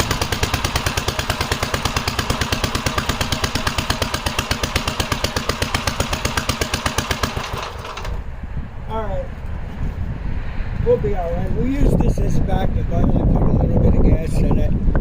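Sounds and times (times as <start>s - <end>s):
loud tractor engine running: 0.0s - 8.6s.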